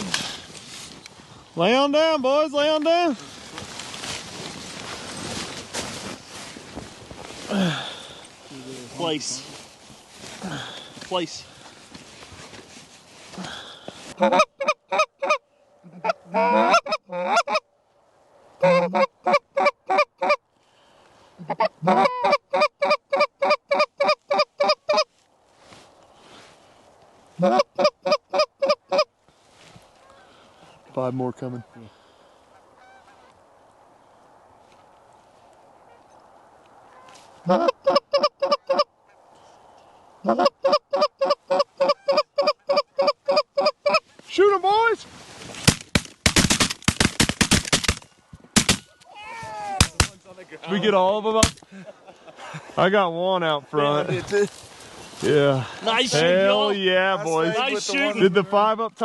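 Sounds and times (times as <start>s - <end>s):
goose call honks and clucks: 14.1s - 17.7s, 18.6s - 20.4s, 21.4s - 25.2s, 27.4s - 29.1s, 32.5s - 33.4s, 36.9s - 39.2s, 40.2s - 44.3s.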